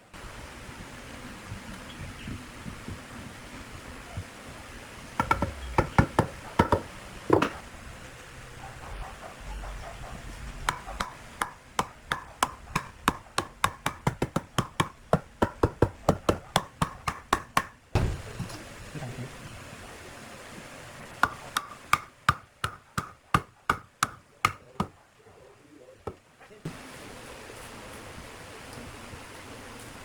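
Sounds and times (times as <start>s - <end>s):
tool striking wood: 5.2s - 7.6s, 10.6s - 18.3s, 21.2s - 25.0s.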